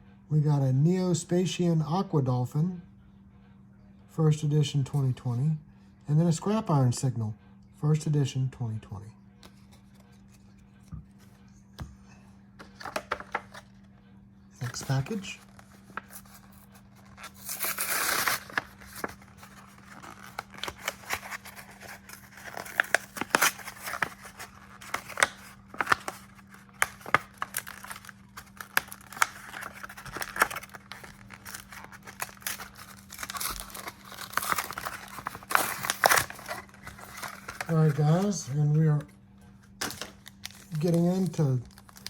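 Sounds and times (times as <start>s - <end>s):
crinkles and rustles of packs: 12.6s - 13.8s, 14.6s - 38.6s, 39.7s - 42.0s
packaging tearing: 14.6s - 38.4s, 39.8s - 42.0s.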